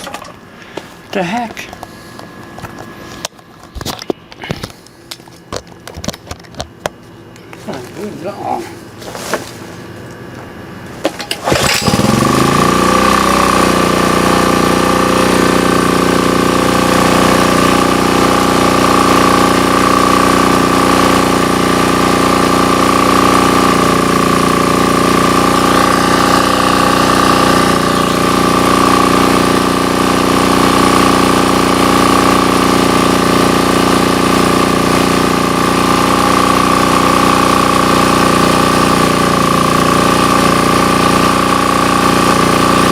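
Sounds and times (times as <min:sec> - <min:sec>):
generator engine running: 0:00.0 - 0:42.9.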